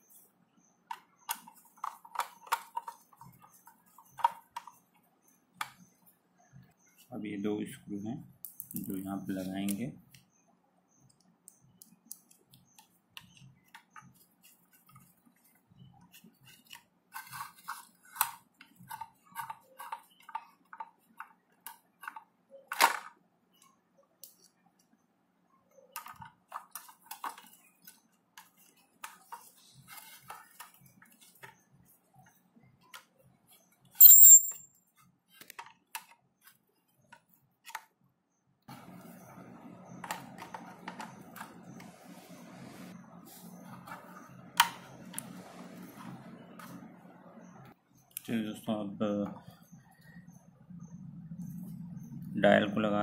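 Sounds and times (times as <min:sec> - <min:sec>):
metallic clink: 0:34.0 - 0:34.7.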